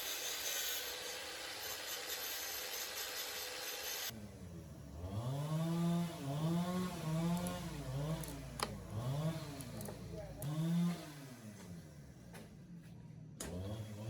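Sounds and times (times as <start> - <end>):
small engine revving: 4.8 - 11.8, 13.4 - 14.0.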